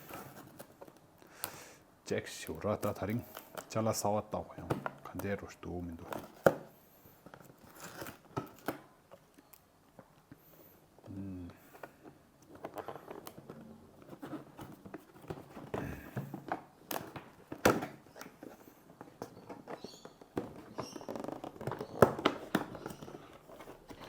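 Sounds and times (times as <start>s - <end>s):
cardboard rustling and scraping: 0.0s - 1.0s, 4.6s - 8.7s, 11.9s - 24.0s.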